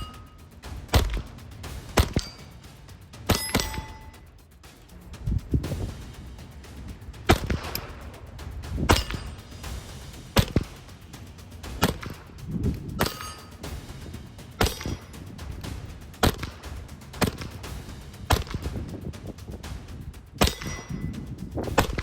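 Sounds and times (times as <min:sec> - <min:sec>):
steel plate ringing: 0:00.0 - 0:01.2, 0:01.9 - 0:02.6, 0:03.3 - 0:04.3, 0:06.9 - 0:15.6, 0:20.4 - 0:21.2.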